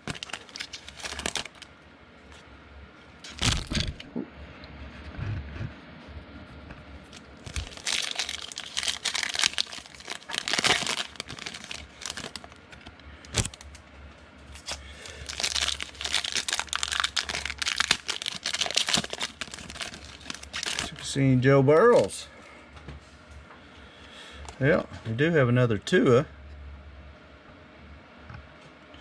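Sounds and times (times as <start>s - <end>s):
foil wrappers tearing and crinkling: 0.0s - 1.7s, 3.2s - 4.0s, 7.1s - 13.8s, 14.5s - 21.1s.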